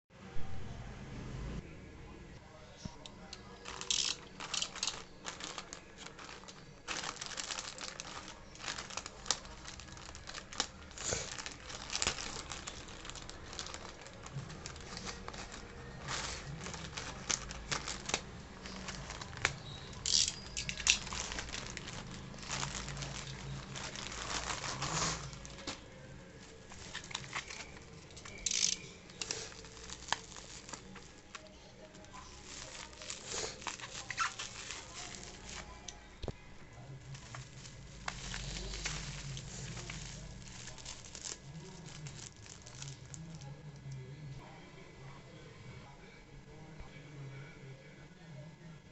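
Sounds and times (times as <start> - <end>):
packaging crinkling: 3.2 - 36.4, 37.0 - 43.6
packaging tearing: 3.6 - 35.9, 37.1 - 43.4.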